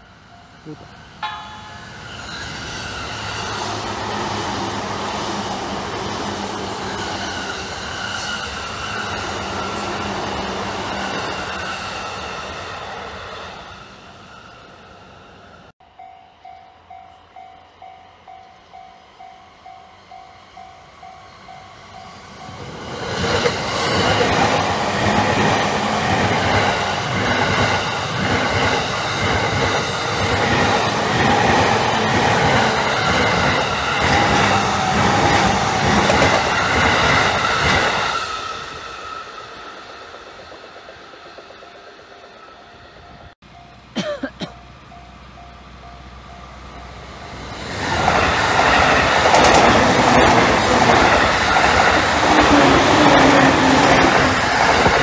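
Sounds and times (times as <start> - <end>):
level-crossing bell two-tone ding: 0.4 - 2.3
train wheels clattering over rail joints: 47.8 - 55.0.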